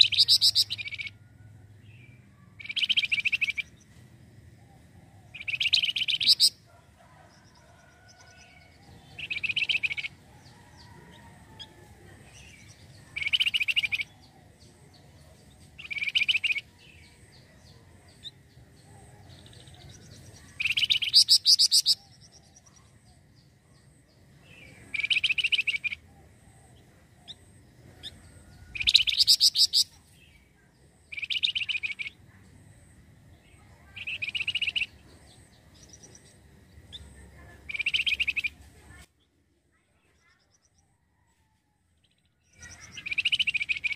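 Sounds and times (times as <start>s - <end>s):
bird singing trilled phrases: 0.0s - 1.2s, 1.9s - 3.9s, 5.3s - 6.6s, 9.0s - 10.2s, 12.3s - 14.7s, 15.8s - 17.2s, 20.4s - 22.8s, 24.1s - 26.0s, 26.7s - 32.3s, 33.4s - 38.6s, 42.0s - 43.9s.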